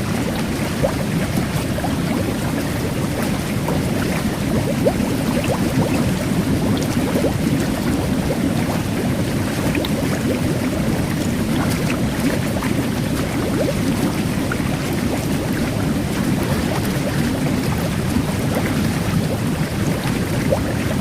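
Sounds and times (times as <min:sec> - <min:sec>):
bubbles fizzing and popping: 0:00.0 - 0:21.0
jet bath water churning: 0:00.0 - 0:21.0.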